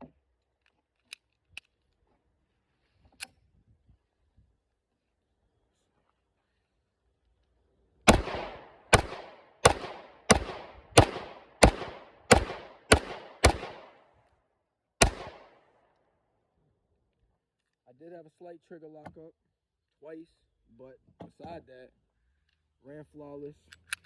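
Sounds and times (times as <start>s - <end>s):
pistol shots: 8.1s - 14.0s, 15.0s - 15.6s.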